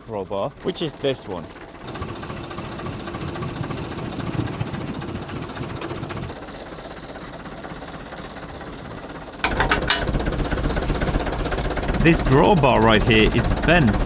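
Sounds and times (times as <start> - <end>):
tractor diesel engine idling: 0.0 - 14.0.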